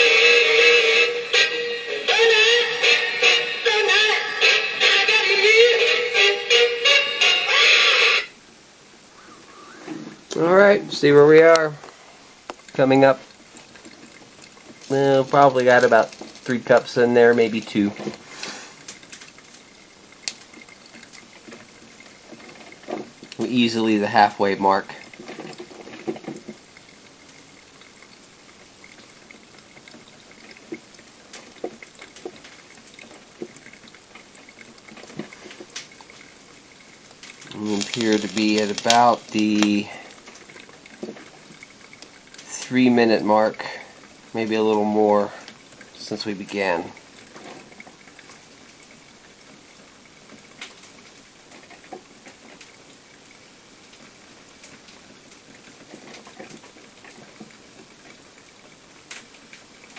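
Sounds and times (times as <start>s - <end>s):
small crackles: 8.3s - 59.9s
coffee maker bubbling: 8.4s - 59.9s
small pops and ticks: 11.5s - 23.5s, 24.9s - 42.8s, 47.0s - 59.9s.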